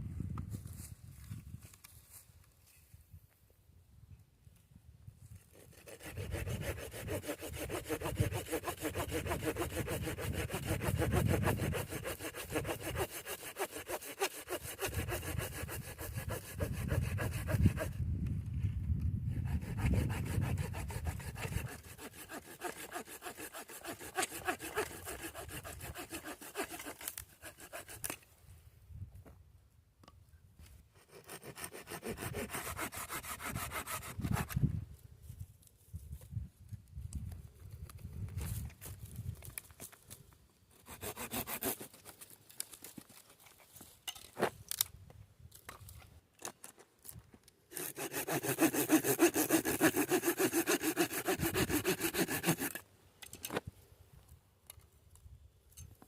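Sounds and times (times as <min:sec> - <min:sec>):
hand saw cutting wood: 0:05.5 - 0:18.0, 0:19.3 - 0:28.3, 0:31.0 - 0:34.7, 0:40.7 - 0:42.3, 0:47.7 - 0:52.9.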